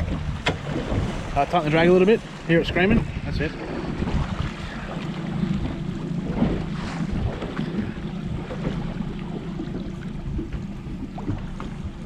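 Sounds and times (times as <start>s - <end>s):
wind noise on microphone: 0.0s - 1.9s, 2.6s - 9.0s
boat engine running: 0.0s - 12.0s
water against hull: 0.0s - 12.0s.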